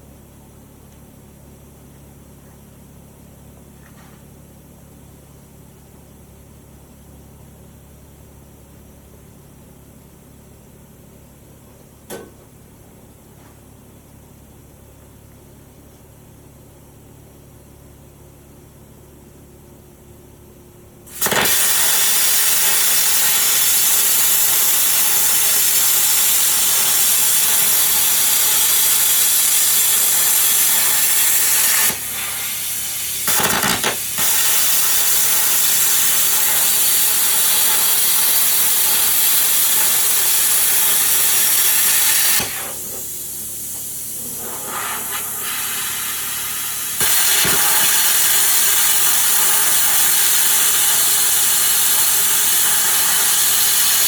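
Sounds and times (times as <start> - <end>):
plasma cutter hissing: 21.1 - 54.0.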